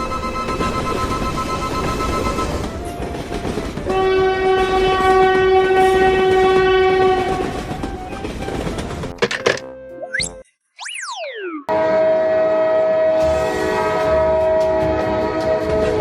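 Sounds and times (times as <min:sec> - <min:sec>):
passing train running: 0:00.0 - 0:09.2, 0:11.7 - 0:16.0
train horn blast: 0:03.9 - 0:07.7, 0:11.7 - 0:16.0.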